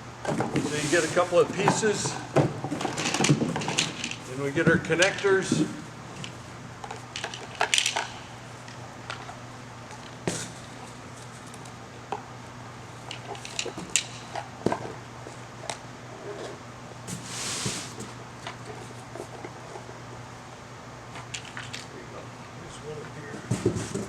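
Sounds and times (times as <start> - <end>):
rustling scrape: 0.6 - 1.6, 17.1 - 18.0.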